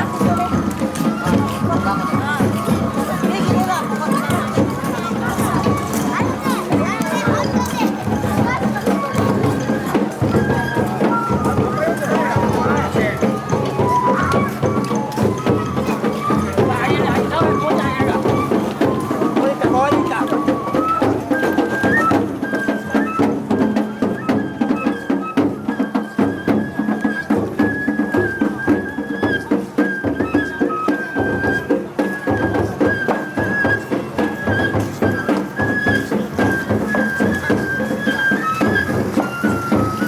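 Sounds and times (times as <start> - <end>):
high bamboo flute melody: 0.0 - 40.0
rapid drum beats: 0.0 - 40.0.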